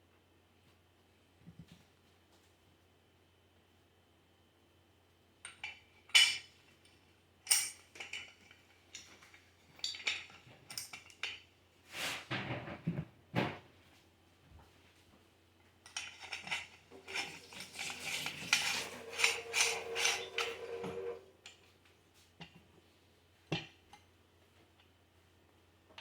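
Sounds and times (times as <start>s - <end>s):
metal parts clinking: 15.9s - 20.4s
metal scraping on metal: 16.0s - 21.5s.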